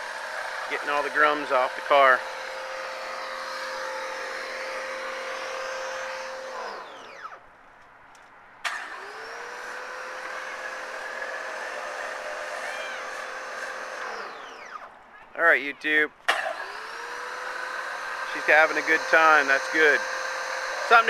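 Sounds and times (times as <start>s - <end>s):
electric pressure washer running: 0.0s - 7.4s, 8.7s - 14.9s, 16.3s - 21.0s.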